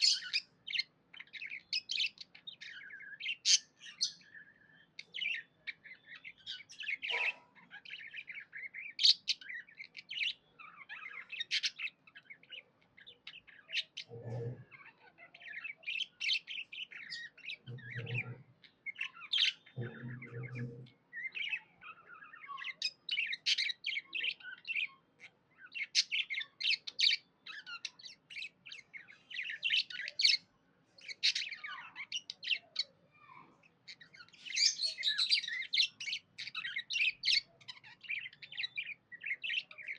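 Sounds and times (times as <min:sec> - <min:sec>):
budgerigars chirping: 0:00.0 - 0:30.4, 0:31.0 - 0:33.3, 0:33.9 - 0:39.9
budgerigar squawks: 0:07.0 - 0:07.8
brief low-pitched sounds: 0:19.8 - 0:20.9.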